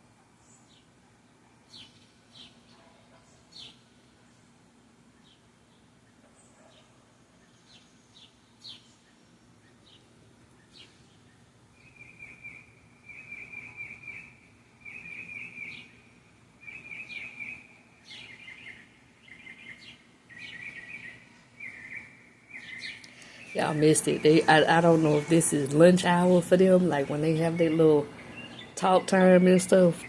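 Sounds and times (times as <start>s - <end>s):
small birds chirping: 1.6s - 30.0s
birds trilling: 16.6s - 30.0s.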